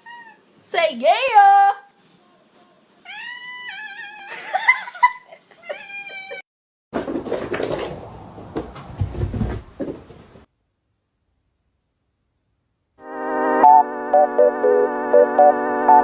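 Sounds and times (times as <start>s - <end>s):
cat meowing: 0.0s - 0.4s, 3.0s - 4.4s, 5.6s - 6.4s.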